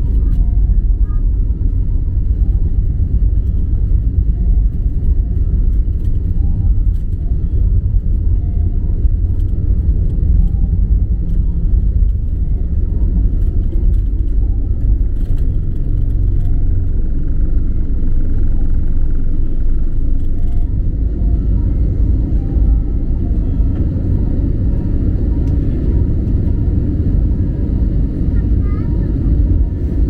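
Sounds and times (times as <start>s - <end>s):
faint steady tones: 0.0s - 30.0s
jet engines low rumble in cabin: 0.0s - 30.0s.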